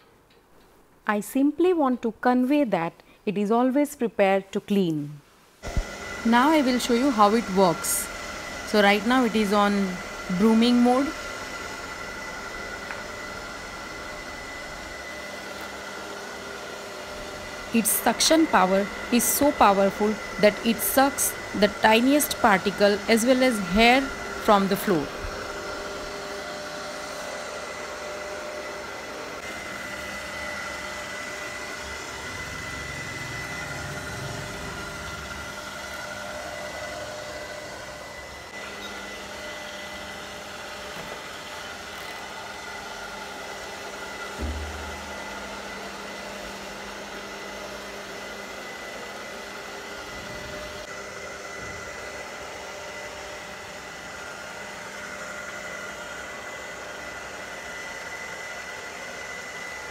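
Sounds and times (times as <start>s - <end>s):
robot vacuum cleaner whirring: 5.6s - 59.9s
low thump: 44.4s - 44.9s.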